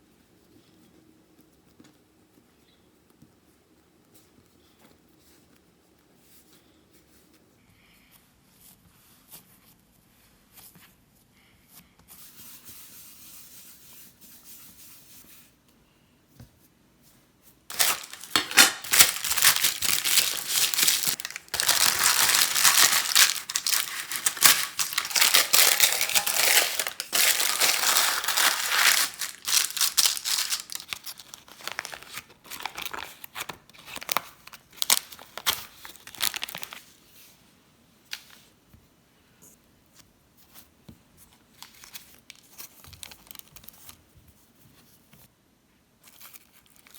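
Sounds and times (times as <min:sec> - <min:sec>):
paper crinkling and rustling: 0:17.7 - 0:37.0, 0:41.3 - 0:44.0.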